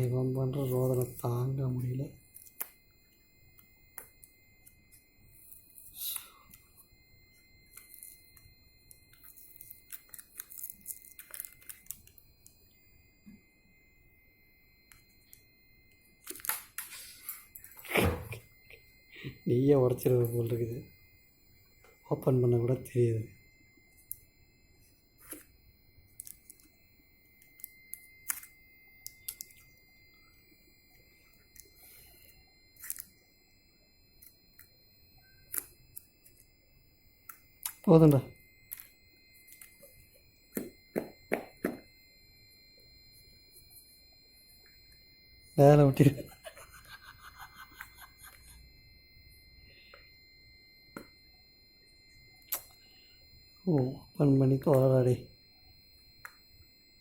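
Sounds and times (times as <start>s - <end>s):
packaging ticks and rustles: 7.7s - 12.6s.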